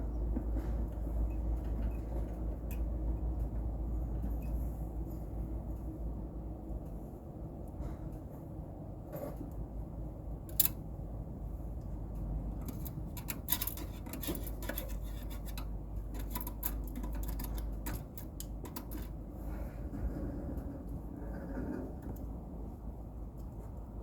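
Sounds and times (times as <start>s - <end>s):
steady low hum: 0.0s - 24.0s
clicks and taps on metal: 10.4s - 10.8s, 11.8s - 19.3s.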